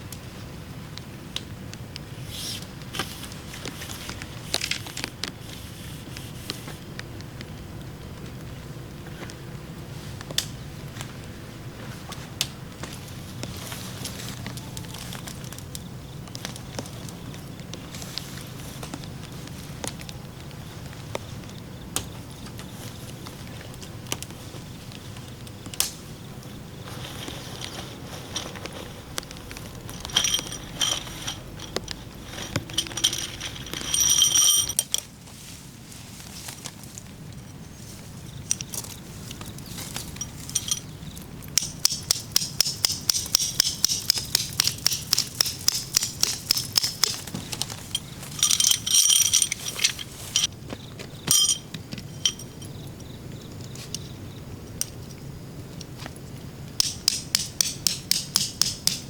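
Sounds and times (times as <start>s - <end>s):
ringing metal clinks: 29.9s - 34.8s, 40.2s - 40.9s, 41.6s - 50.5s, 51.3s - 52.9s
sharp metallic taps: 41.5s - 49.5s, 56.8s - 59.0s.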